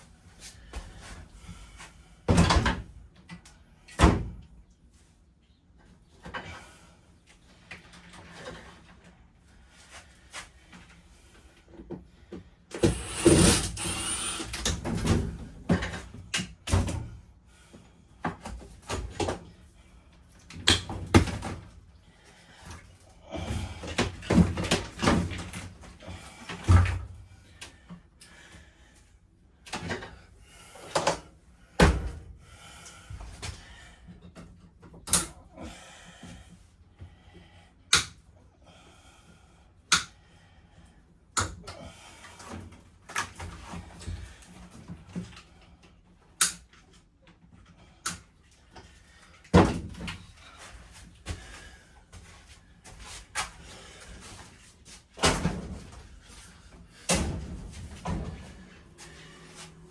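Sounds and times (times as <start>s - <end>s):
rattling and scraping: 12.8s - 14.6s.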